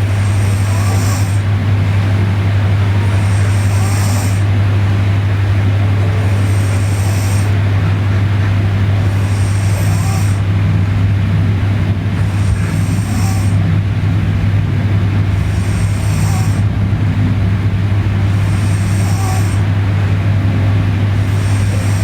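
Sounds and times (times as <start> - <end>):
person snoring: 0.0 - 4.6, 6.0 - 7.6, 9.0 - 10.6, 12.2 - 13.6, 15.4 - 16.6, 18.3 - 19.7, 21.1 - 22.0
loud steady low hum: 0.0 - 22.0.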